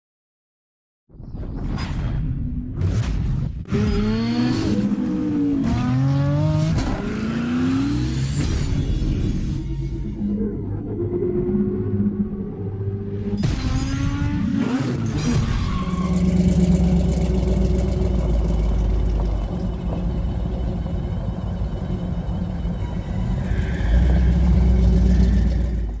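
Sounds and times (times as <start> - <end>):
car engine revving: 3.7 - 10.3, 12.6 - 26.0.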